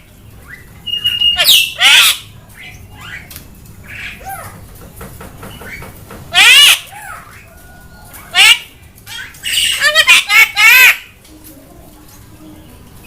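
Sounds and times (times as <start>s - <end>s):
bird squawking harshly: 1.0s - 2.3s, 6.3s - 7.3s.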